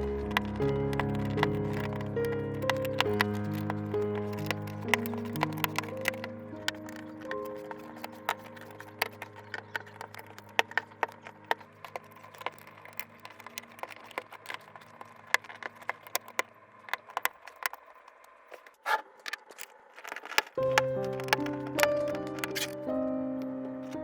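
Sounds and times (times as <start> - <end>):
soft background music: 0.0 - 15.6, 20.6 - 24.0
plastic bricks clicking and clattering: 0.0 - 23.1.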